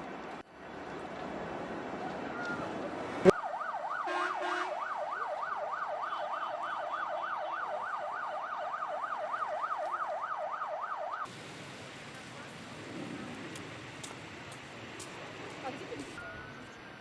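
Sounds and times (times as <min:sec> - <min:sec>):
siren yelping: 0:03.3 - 0:11.3.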